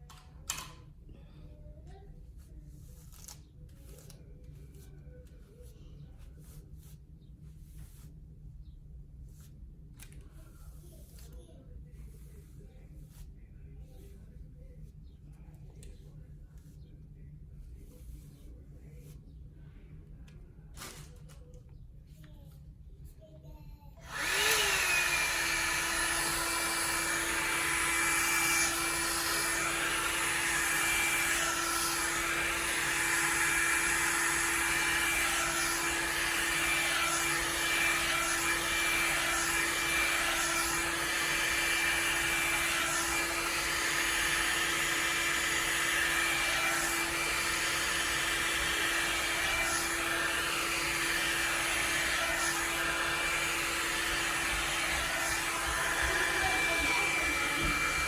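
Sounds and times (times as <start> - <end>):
hair dryer brush blowing: 24.0 - 58.0.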